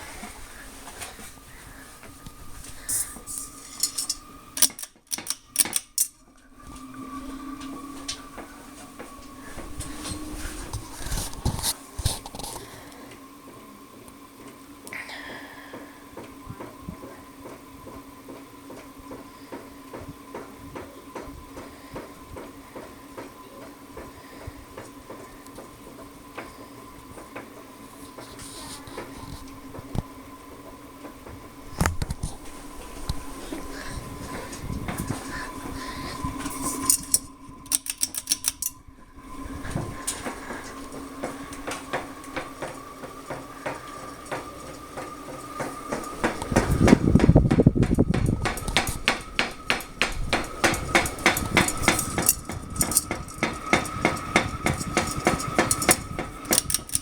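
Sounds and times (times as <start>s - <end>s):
ceiling fan motor hum: 0.0s - 57.0s
rhythmic fan ticking: 28.9s - 57.0s.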